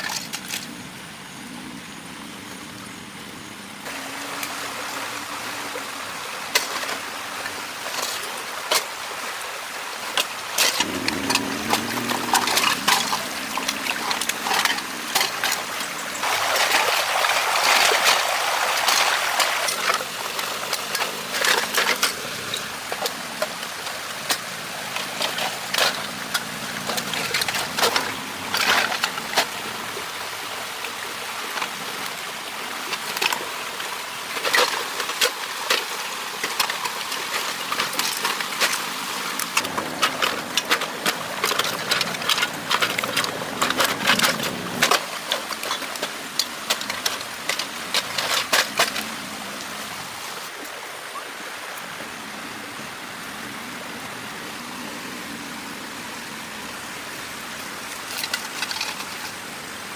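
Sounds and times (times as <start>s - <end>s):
rushing floodwater: 0.0s - 59.9s
sharp knocks and crackles: 10.2s - 16.8s, 34.4s - 49.2s.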